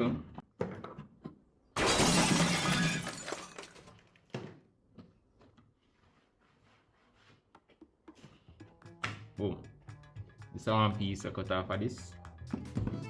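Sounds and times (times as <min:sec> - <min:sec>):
crashing breaking noise: 0:01.8 - 0:04.0.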